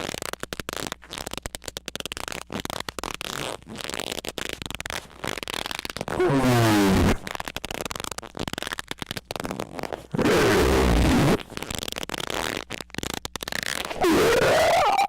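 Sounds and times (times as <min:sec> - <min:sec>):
distorted squeaks: 0:09.8 - 0:15.0
crackling and clicking: 0:11.2 - 0:15.0.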